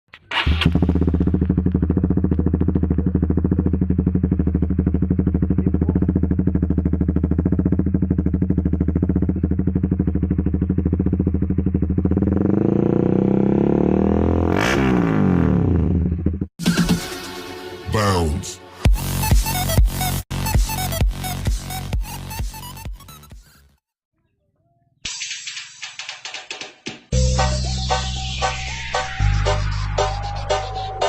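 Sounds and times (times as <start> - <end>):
motorcycle engine idling and revving: 0.2 - 16.6.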